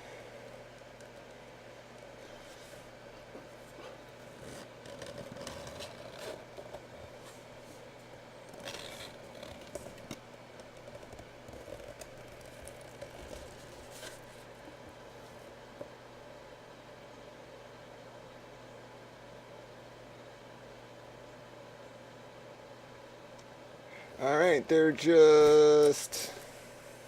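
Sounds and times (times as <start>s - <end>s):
faint steady hum: 0.0s - 27.0s
rustles scrapes and clicks: 2.3s - 7.8s, 8.5s - 14.5s
packaging rustling and tearing: 4.4s - 6.9s, 8.5s - 14.5s.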